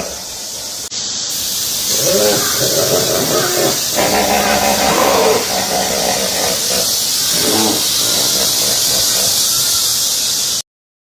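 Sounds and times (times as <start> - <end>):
steady hiss: 0.0 - 10.6
hippopotamus calls: 1.9 - 9.5.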